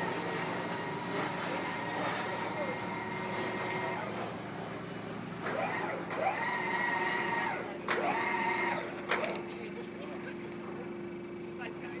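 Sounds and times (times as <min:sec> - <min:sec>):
steady mechanical hum: 0:00.0 - 0:12.0
motor whine rising in pitch: 0:05.4 - 0:09.0.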